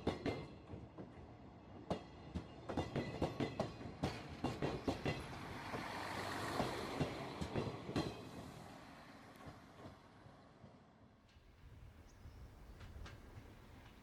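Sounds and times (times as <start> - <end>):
rushing of passing train cars: 0.0 - 14.0
train wheels clicking over rail joints: 1.8 - 8.5, 11.2 - 14.0.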